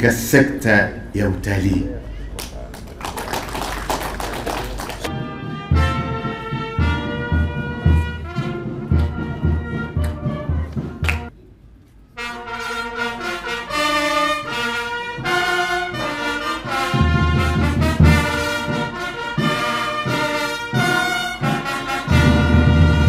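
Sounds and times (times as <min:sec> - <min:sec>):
brass band playing chords: 0:04.0 - 0:11.3, 0:12.2 - 0:23.0.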